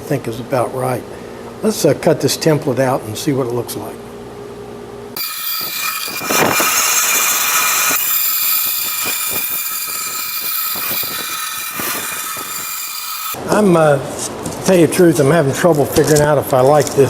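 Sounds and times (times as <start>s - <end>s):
power saw motor whine: 5.2s - 13.4s.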